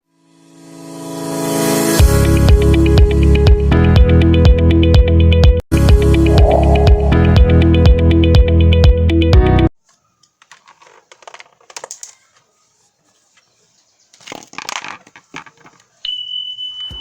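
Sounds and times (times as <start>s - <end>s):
intro music: 5.8s - 8.6s
steady high tone: 5.9s - 7.9s
small hard parts clicking and rattling: 10.3s - 12.2s, 14.2s - 15.9s.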